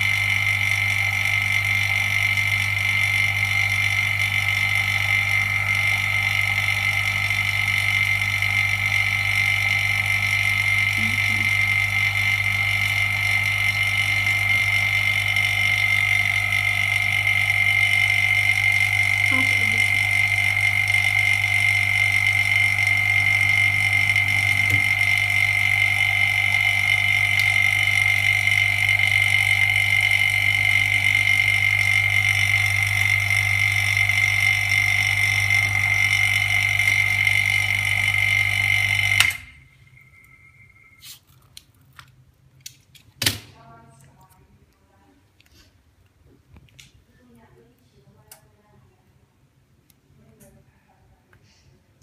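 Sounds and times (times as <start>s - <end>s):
electrical machine humming and whining: 0.0s - 41.1s.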